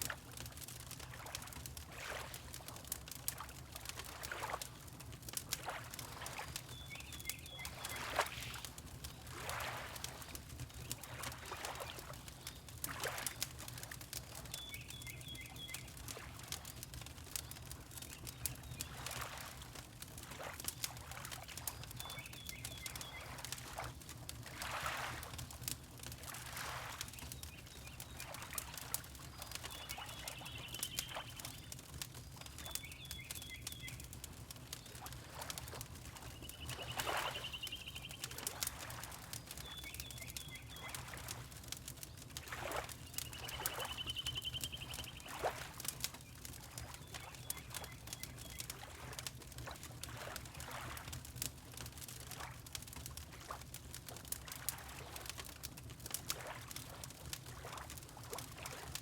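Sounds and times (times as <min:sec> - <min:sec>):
wood fire crackling: 0:00.0 - 0:59.0
water lapping: 0:01.0 - 0:04.8, 0:05.5 - 0:12.2, 0:12.8 - 0:13.9, 0:18.4 - 0:32.0, 0:34.3 - 0:40.0, 0:40.8 - 0:41.6, 0:42.4 - 0:51.2.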